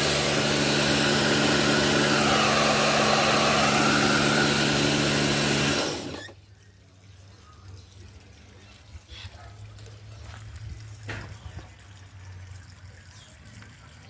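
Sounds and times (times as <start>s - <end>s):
electric pressure washer running: 0.0s - 6.4s.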